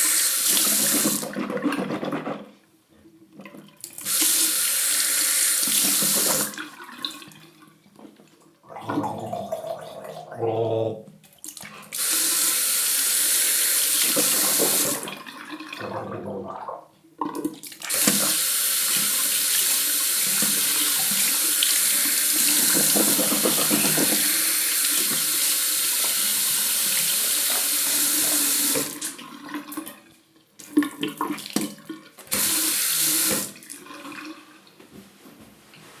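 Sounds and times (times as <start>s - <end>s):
tap running into sink: 13.9s - 15.1s, 17.9s - 26.2s.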